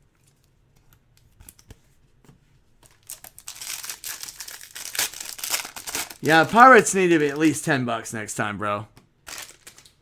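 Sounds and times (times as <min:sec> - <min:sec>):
wrapper crinkling and tearing: 0:02.8 - 0:07.7, 0:09.3 - 0:10.0.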